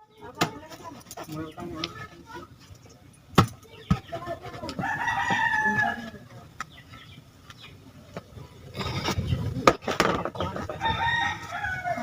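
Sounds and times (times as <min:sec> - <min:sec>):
rooster crowing: 0:04.8 - 0:06.2, 0:10.7 - 0:12.0.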